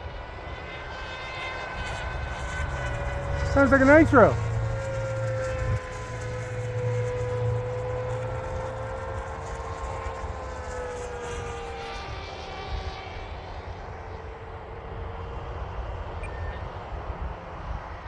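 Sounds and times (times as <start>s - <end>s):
model plane motor whining: 1.6s - 14.4s.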